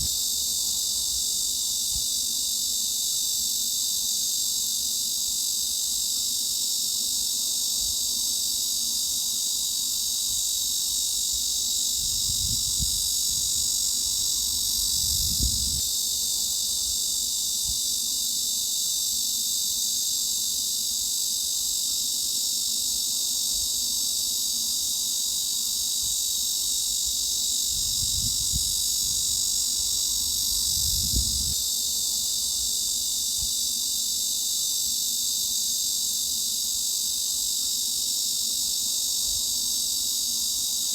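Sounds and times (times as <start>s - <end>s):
cicadas buzzing: 0.0s - 40.9s.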